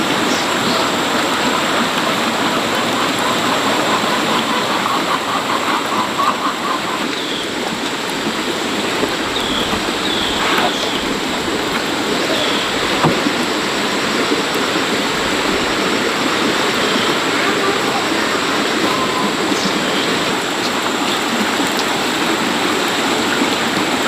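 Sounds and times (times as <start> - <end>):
loud hissing rush: 8.0 - 23.4.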